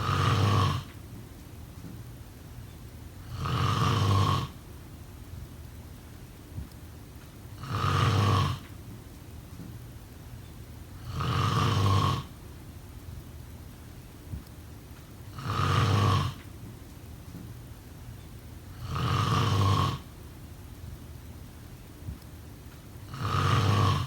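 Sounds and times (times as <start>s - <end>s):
person snoring: 0.0s - 0.9s, 3.3s - 4.6s, 7.6s - 8.7s, 11.0s - 12.3s, 15.3s - 16.4s, 18.8s - 20.0s, 23.1s - 24.0s.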